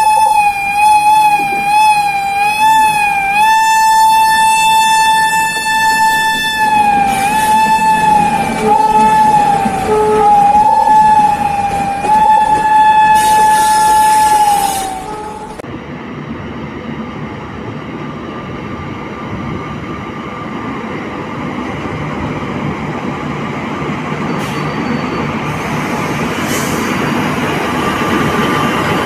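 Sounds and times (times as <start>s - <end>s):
locomotive horn: 0.0s - 15.6s
train running on track: 0.0s - 29.0s.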